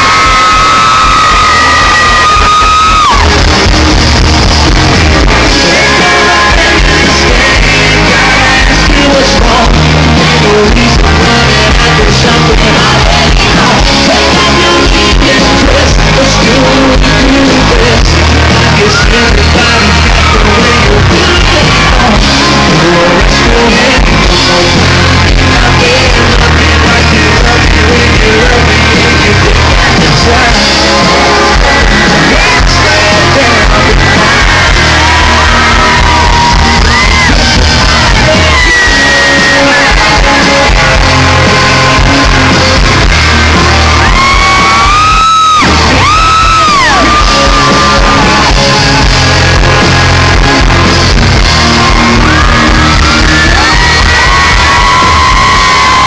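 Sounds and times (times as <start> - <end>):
live country band playing: 0.0 - 56.0
person singing: 0.0 - 56.0
people shouting: 30.8 - 56.0.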